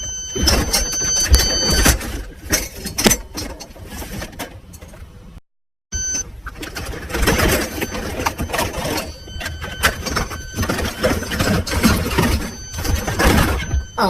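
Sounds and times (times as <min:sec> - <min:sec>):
high-pitched electronic beep: 0:00.0 - 0:02.0, 0:05.9 - 0:06.3, 0:07.2 - 0:14.0
items rattling in a box: 0:06.5 - 0:14.0.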